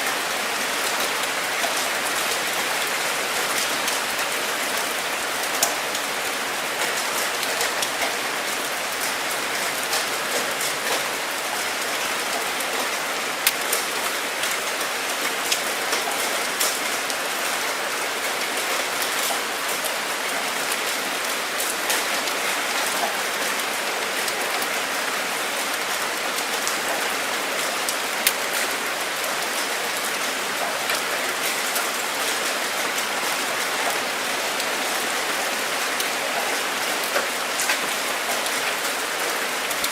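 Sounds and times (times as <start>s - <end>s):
steady rain hiss: 0.0s - 39.9s
raindrops ticking: 1.0s - 17.2s.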